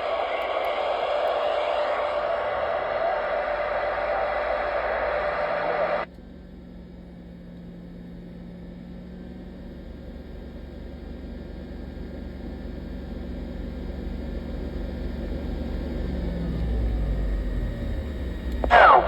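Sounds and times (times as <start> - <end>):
radio hiss and static: 0.0 - 6.1, 18.6 - 19.0
steady hum and low rumble: 0.0 - 6.1, 17.9 - 19.0.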